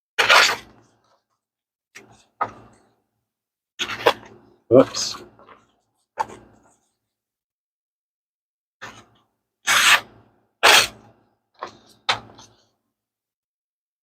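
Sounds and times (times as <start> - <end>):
blade scraping arm hair: 0.2 - 0.8, 8.8 - 11.1.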